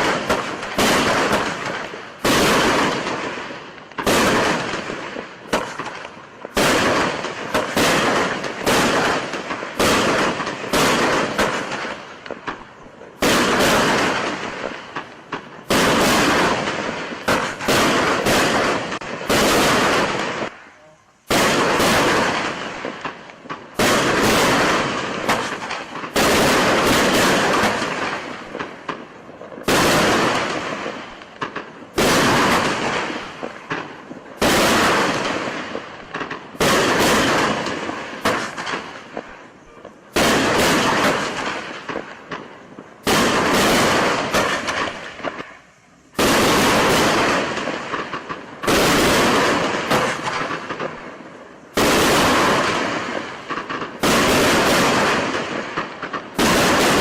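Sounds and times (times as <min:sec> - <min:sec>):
fireworks battery firing: 0:00.0 - 0:57.0.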